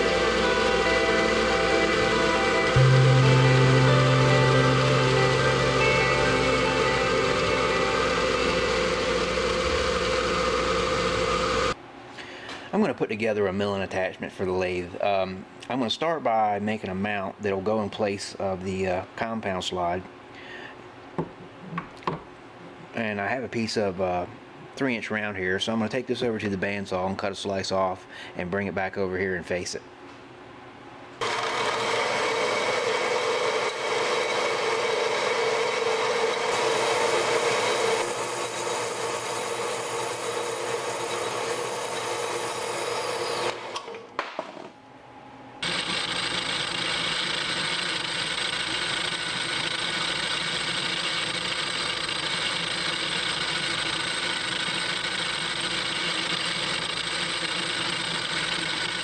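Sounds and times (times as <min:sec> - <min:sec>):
bandsaw cutting metal: 0:00.0 - 0:11.8, 0:31.2 - 0:43.9, 0:45.6 - 0:59.0
lathe running: 0:00.0 - 0:11.8, 0:31.2 - 0:43.9, 0:45.6 - 0:59.0.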